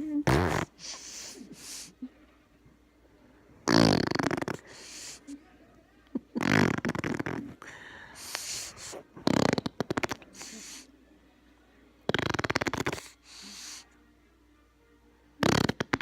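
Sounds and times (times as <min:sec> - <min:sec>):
child blowing raspberries: 0:00.3 - 0:01.9, 0:03.7 - 0:05.2.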